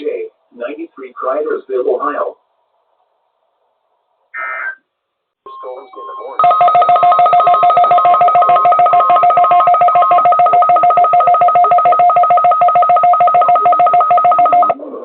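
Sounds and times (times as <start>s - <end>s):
rapid electronic alert beeps: 5.6s - 14.8s.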